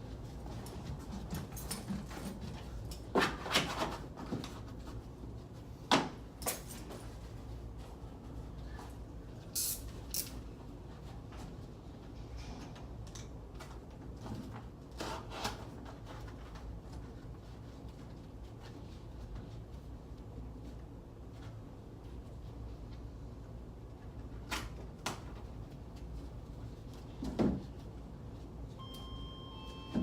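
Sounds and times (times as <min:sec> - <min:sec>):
wallpaper rustling and scraping: 0:00.0 - 0:09.4, 0:13.8 - 0:23.4.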